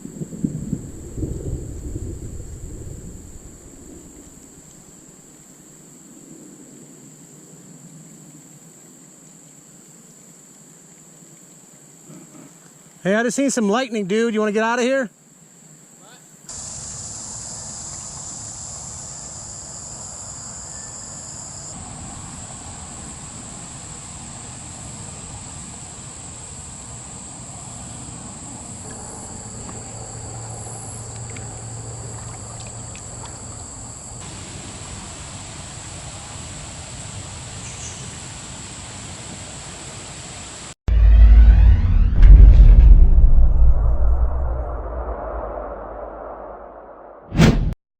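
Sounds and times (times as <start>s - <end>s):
high-pitched insect chorus: 13.1s - 41.4s
low rumble: 40.9s - 47.8s.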